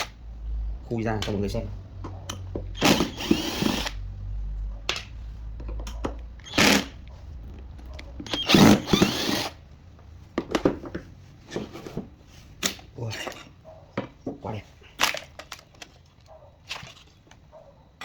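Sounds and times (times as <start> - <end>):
power drill running: 2.8 - 4.0, 6.4 - 7.0, 8.3 - 9.6.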